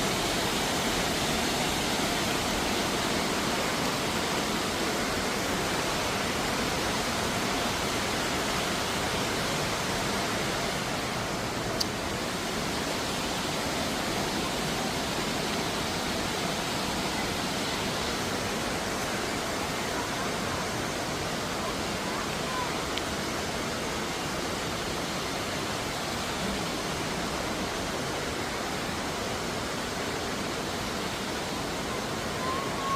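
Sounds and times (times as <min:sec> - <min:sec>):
faint click: 0:11.8 - 0:12.0.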